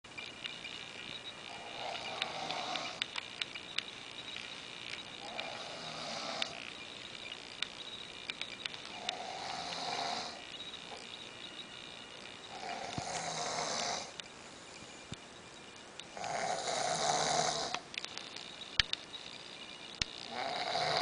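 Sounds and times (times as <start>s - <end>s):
man snoring: 1.5s - 3.0s, 5.2s - 6.6s, 9.0s - 10.5s, 12.5s - 14.2s, 16.2s - 17.8s, 20.2s - 21.0s.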